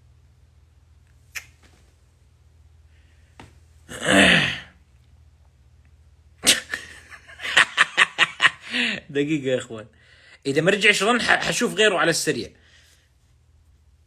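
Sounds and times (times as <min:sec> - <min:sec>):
person sneezing: 0:03.9 - 0:04.8, 0:06.4 - 0:07.0.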